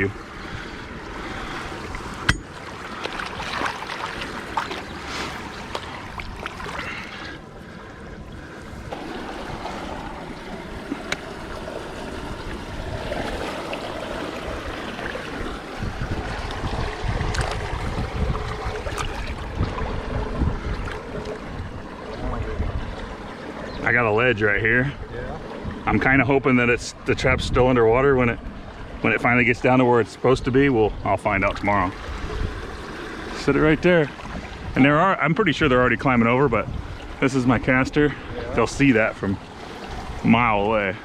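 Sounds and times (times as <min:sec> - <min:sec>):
water running and splashing: 0:01.2 - 0:07.4, 0:08.4 - 0:23.6
wind rumble on microphone: 0:08.1 - 0:24.0, 0:24.8 - 0:41.0.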